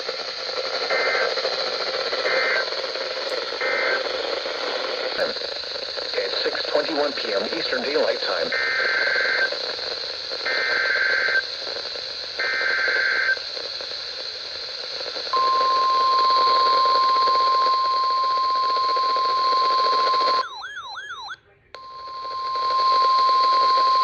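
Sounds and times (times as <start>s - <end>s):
radio static: 0.0s - 20.4s, 21.2s - 24.0s
steady alarm tone: 15.3s - 24.0s.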